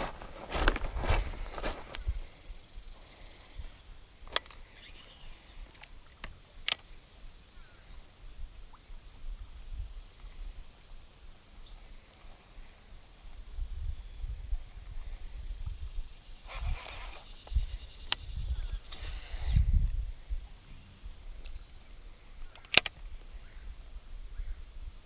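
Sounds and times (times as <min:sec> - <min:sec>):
sharp clicks: 0:22.5 - 0:23.0.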